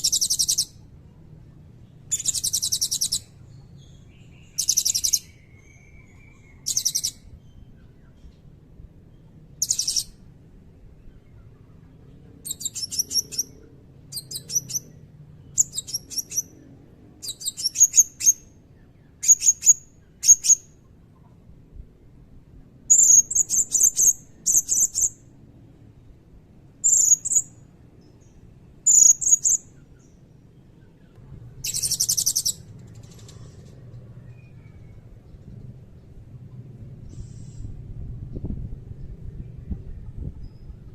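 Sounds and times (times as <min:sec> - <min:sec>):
buzzy bird trill: 0:00.0 - 0:00.8, 0:01.8 - 0:08.0, 0:09.6 - 0:10.2, 0:12.4 - 0:16.6, 0:17.2 - 0:20.8, 0:22.9 - 0:25.2, 0:26.8 - 0:30.2, 0:31.6 - 0:35.0
parrot chirping and whistling: 0:02.1 - 0:03.2, 0:09.6 - 0:10.1, 0:31.6 - 0:32.6.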